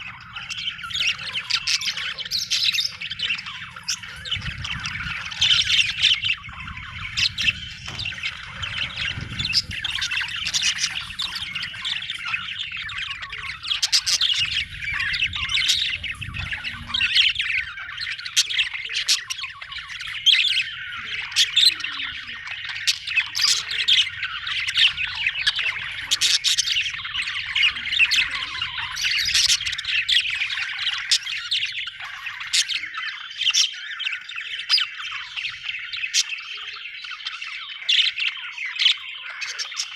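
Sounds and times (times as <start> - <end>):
budgerigars chirping and warbling: 0.0 - 39.9
sharp squawks: 0.0 - 39.9
low rumble: 6.3 - 13.7.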